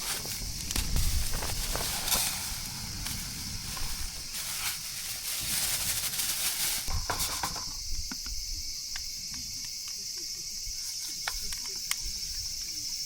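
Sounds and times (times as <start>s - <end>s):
low rumble: 0.0s - 5.7s
broad rustling noise: 0.0s - 7.6s
insects chirping: 0.0s - 13.0s.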